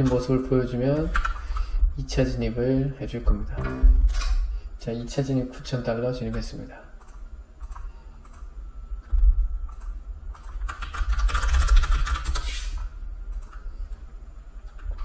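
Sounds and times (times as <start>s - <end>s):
computer keyboard typing: 1.0s - 1.6s, 6.3s - 8.5s, 9.1s - 13.7s
scattered clicks: 6.3s - 13.7s.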